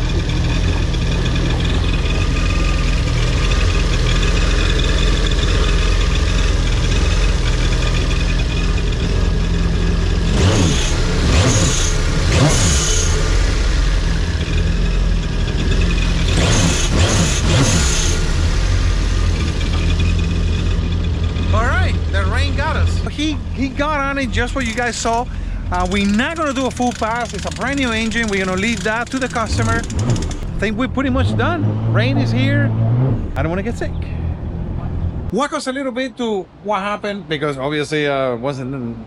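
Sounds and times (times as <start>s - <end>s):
personal watercraft engine running: 0.0s - 30.8s.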